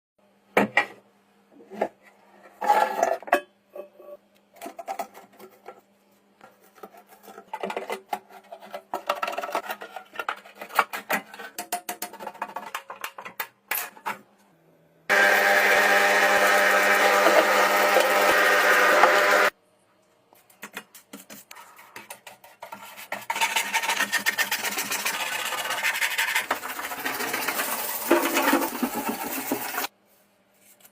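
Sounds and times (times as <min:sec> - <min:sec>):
small hard parts clicking and scraping: 0:04.5 - 0:14.2.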